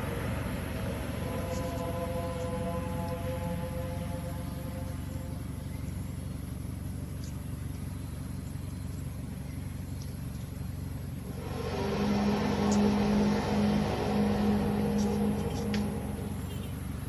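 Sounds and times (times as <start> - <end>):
low rumbling drone: 0.0 - 17.0
faint ticks: 7.2 - 8.0, 8.9 - 10.5
loud hiss: 11.3 - 17.0.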